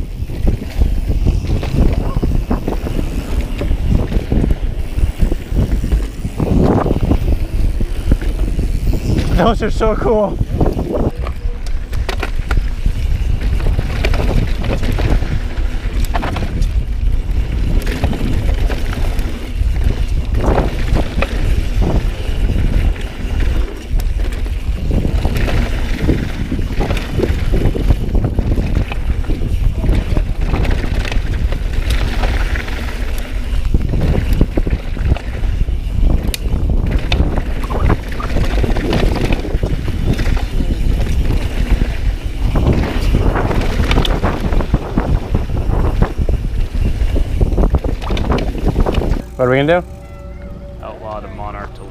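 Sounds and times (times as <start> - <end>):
wind buffeting microphone: 0.0 - 51.9
bike knocks and rattles: 0.1 - 49.8.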